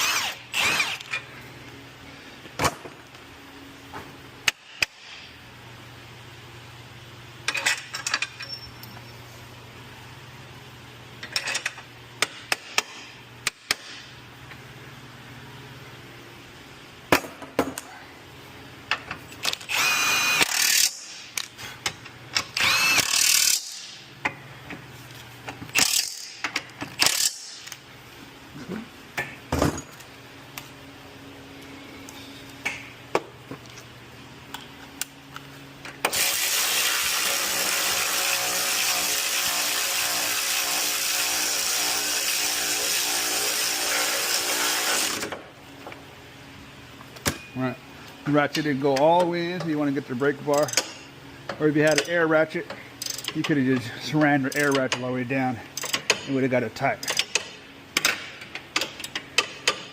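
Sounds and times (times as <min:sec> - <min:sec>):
power ratchet whining: 0:00.0 - 0:01.2, 0:19.4 - 0:21.5, 0:22.4 - 0:24.0, 0:25.7 - 0:27.8
metal tool clinks: 0:08.0 - 0:09.2.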